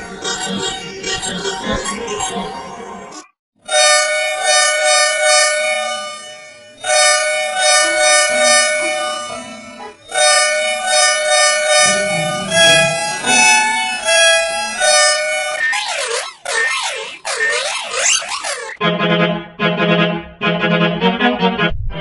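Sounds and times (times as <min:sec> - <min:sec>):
two-tone bus horn: 0:03.6 - 0:15.7.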